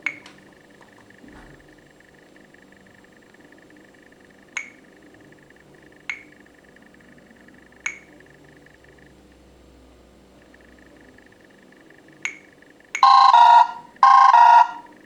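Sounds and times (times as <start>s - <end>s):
bell-like ringtone dings: 13.0s - 14.9s.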